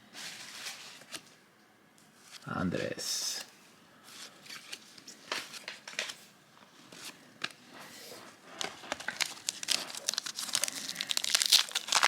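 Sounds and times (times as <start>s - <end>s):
wrapper crinkling: 8.6s - 12.0s.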